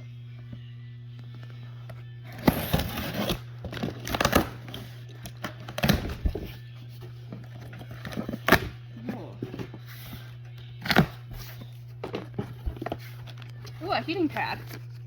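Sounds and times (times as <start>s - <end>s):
packaging tearing and crinkling: 2.3s - 4.8s.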